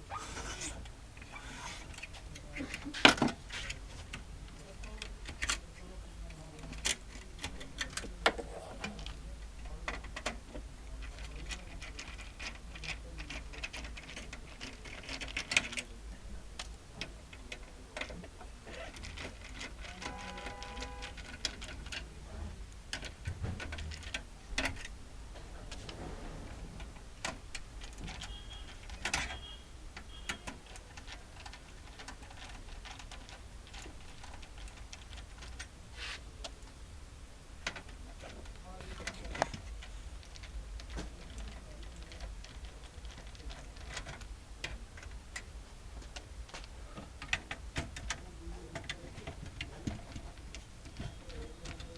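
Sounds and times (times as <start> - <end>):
printer parts clicking and tapping: 16.6 - 22.1, 26.8 - 35.7.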